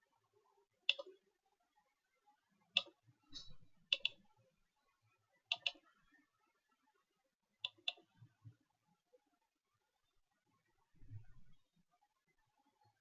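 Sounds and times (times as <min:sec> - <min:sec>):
computer mouse clicks: 0:00.9 - 0:01.1, 0:02.8 - 0:04.2, 0:05.5 - 0:05.8, 0:07.6 - 0:08.1.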